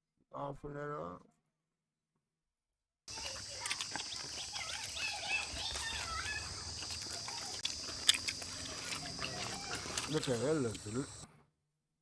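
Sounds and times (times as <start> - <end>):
high insect drone: 3.1 - 11.2.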